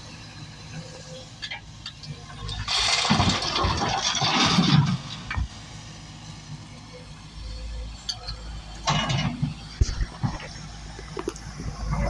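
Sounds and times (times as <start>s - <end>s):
excavator engine running low: 0.0s - 12.0s
rock tumbling and scraping: 9.3s - 12.0s.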